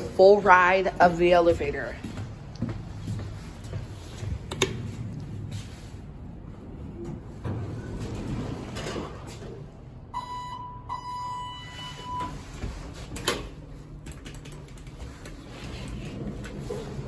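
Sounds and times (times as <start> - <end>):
elevator electronic beep: 10.1 - 12.6.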